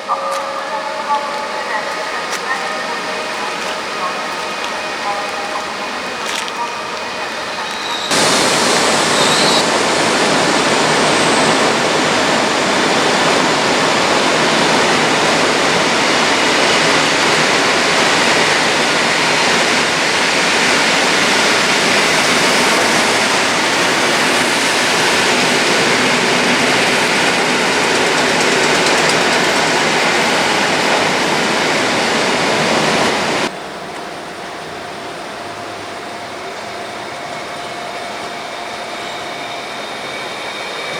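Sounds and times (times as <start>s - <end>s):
heavy rain hissing: 0.8s - 33.5s.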